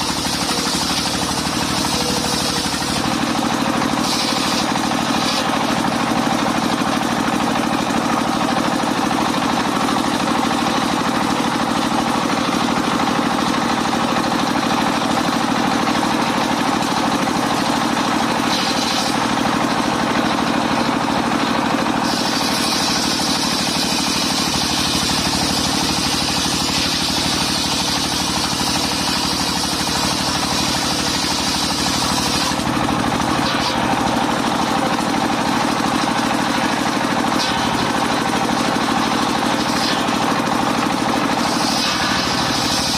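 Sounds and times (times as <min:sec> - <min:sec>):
saw blade cutting log hiss: 0:00.0 - 0:03.2, 0:03.9 - 0:05.6, 0:41.4 - 0:42.9
engine-driven sawmill running: 0:00.0 - 0:42.9.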